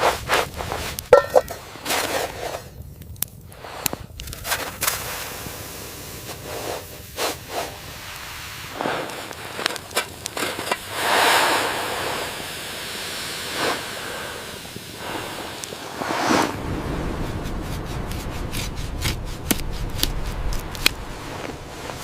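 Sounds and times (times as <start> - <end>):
hissing: 4.8 - 22.0.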